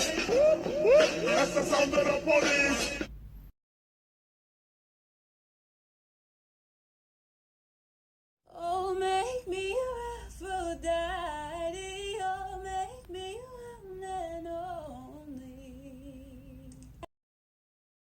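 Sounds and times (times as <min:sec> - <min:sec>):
woman singing: 0:08.5 - 0:17.0.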